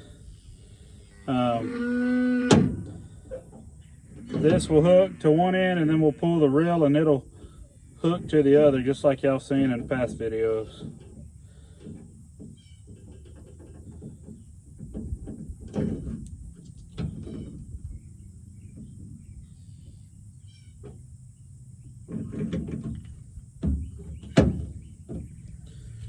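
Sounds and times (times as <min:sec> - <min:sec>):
faint chirping: 0:00.0 - 0:13.2, 0:16.3 - 0:22.3, 0:23.2 - 0:26.0
louder thuds: 0:02.4 - 0:05.1.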